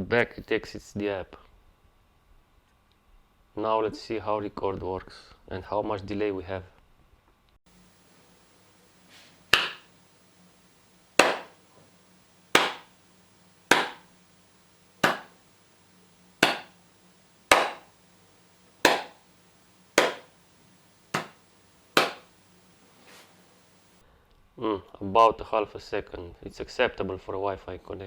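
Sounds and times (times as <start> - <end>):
sharp hand claps: 9.5 - 9.9, 11.2 - 11.6, 12.5 - 12.9, 13.7 - 14.1, 15.0 - 15.4, 16.4 - 16.8, 17.5 - 17.9, 18.8 - 19.2, 20.0 - 20.3, 21.1 - 21.4, 22.0 - 22.3.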